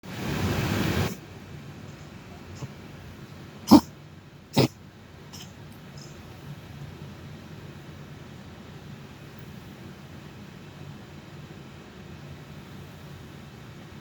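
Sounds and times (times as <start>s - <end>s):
animal coughing: 2.3s - 2.8s, 3.6s - 3.9s, 4.5s - 6.2s.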